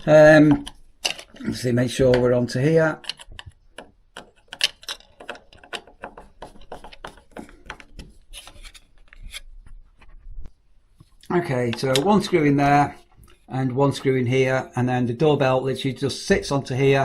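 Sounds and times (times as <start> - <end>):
bracket handling clicks and scrapes: 0.5 - 1.6, 3.0 - 10.2.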